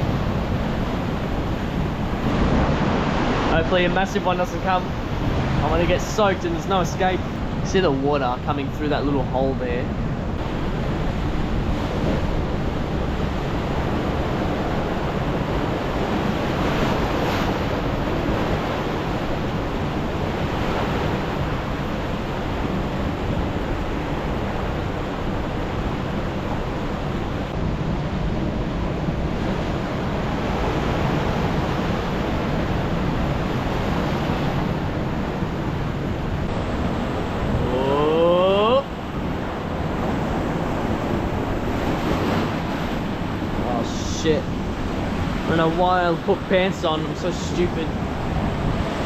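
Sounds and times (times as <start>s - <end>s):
wind rumbling on microphone: 0.0s - 49.0s
waves washing against rocks: 38.9s - 49.0s.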